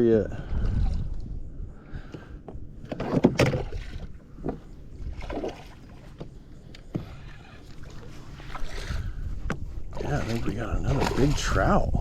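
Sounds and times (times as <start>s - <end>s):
water splashing: 3.2s - 6.2s, 7.0s - 9.2s, 9.9s - 12.0s.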